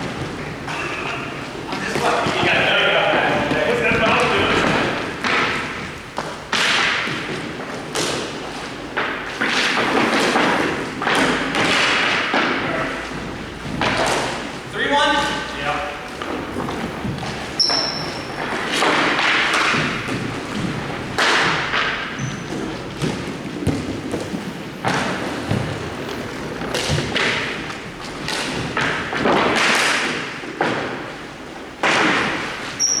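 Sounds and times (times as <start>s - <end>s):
skates scraping ice: 0.0s - 32.8s
thuds and knocks: 16.2s - 31.0s.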